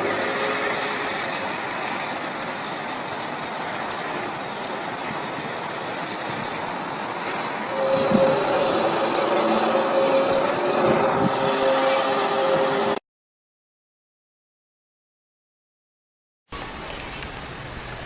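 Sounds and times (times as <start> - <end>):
steady rushing noise: 0.0 - 13.0
low drone tone: 7.3 - 13.0.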